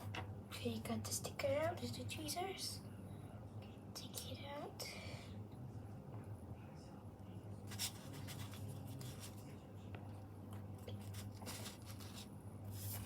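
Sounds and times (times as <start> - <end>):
steady low hum: 0.0 - 13.0
paper rustling: 7.7 - 9.4, 10.9 - 13.0.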